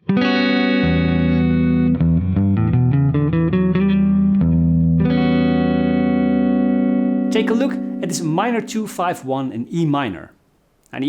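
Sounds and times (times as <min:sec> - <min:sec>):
guitar chord and arpeggio: 0:00.0 - 0:08.8.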